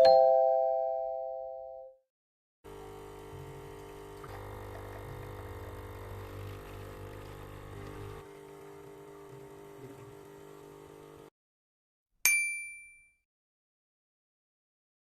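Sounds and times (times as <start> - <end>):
coffee machine pump buzzing: 2.7 - 11.3.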